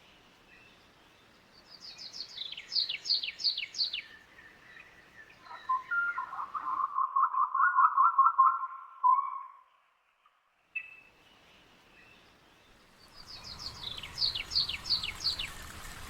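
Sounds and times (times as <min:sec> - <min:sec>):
bird whistling downward notes: 0:05.4 - 0:09.6.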